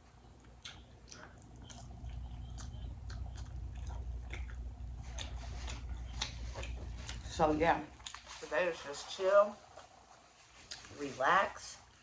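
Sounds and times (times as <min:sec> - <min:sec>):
chewing food: 0:00.0 - 0:11.2
wet mouth clicks and smacks: 0:00.4 - 0:07.2.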